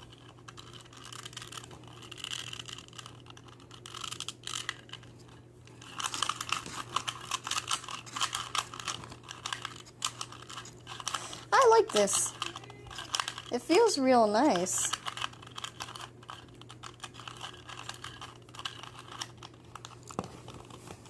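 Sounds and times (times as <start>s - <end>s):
plastic puzzle cube clicking: 11.8s - 13.5s, 14.9s - 20.0s.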